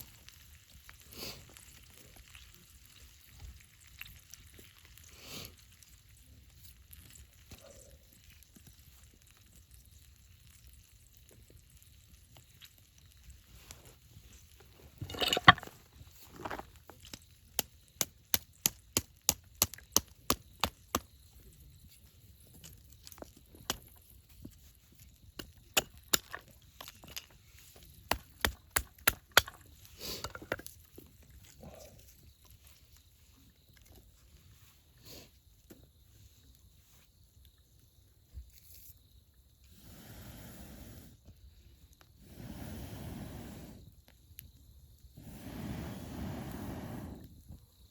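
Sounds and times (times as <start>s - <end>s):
blade chopping wood: 28.1s - 29.6s.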